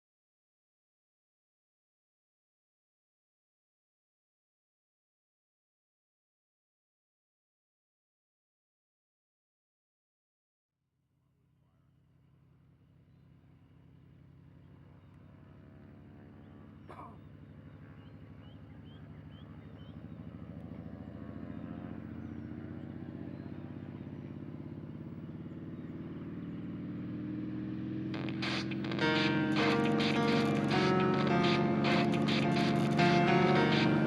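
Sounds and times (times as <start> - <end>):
aircraft piston engine running: 12.2 - 34.0.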